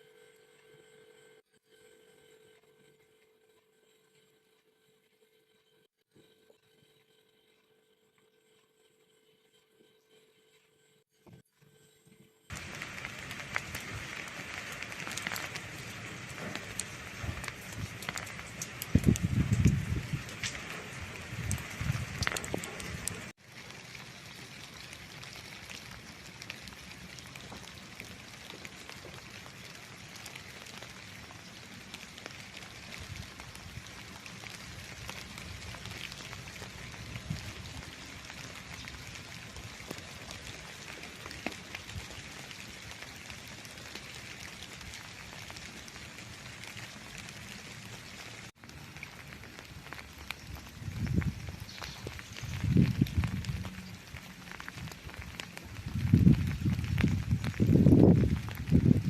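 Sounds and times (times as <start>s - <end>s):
steady rain falling: 12.5s - 59.0s.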